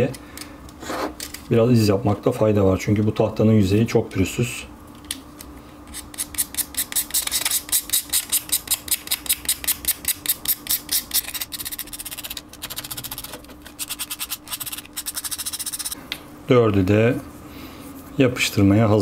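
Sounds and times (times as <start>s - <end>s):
scratching on wooden block: 10.7s - 16.0s.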